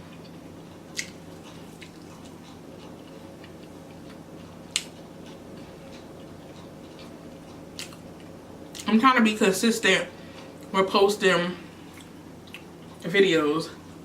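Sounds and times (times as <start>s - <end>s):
person chewing food: 0.0s - 8.9s, 11.7s - 13.1s
low room hum: 0.0s - 14.0s.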